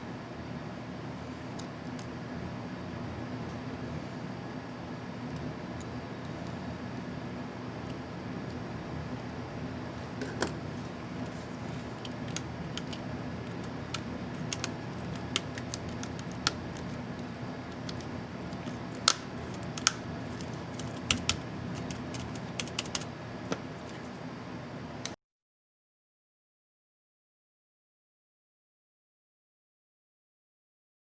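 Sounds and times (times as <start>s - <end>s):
steady low hum: 0.0s - 25.2s
laptop keys clicking: 11.2s - 24.0s.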